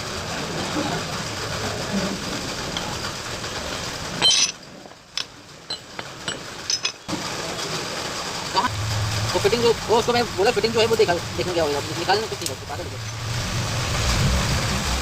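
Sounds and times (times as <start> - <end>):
workshop background noise: 0.0 - 13.7
metal parts clicking and tapping: 4.2 - 7.2.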